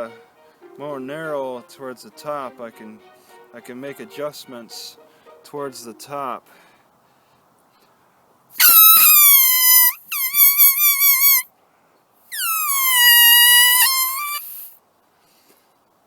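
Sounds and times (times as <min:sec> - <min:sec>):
grass blade whistle squealing: 0:08.6 - 0:11.5, 0:12.3 - 0:14.7.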